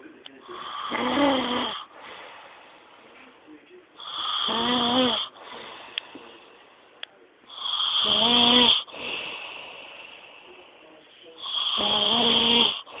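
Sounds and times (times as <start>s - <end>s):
man snoring heavily: 0.5s - 1.9s, 4.0s - 5.7s, 7.5s - 10.2s, 11.4s - 13.0s
soft breathing: 1.7s - 4.5s, 5.2s - 7.9s, 8.8s - 11.8s.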